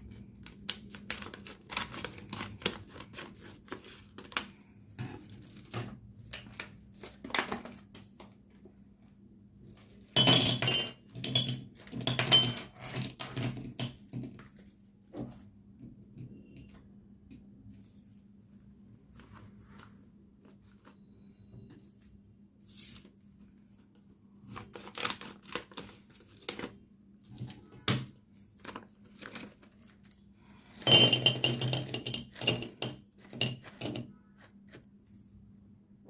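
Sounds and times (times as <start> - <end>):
plastic wrappers crinkling: 0.1 - 4.6, 24.5 - 26.8, 28.6 - 30.2.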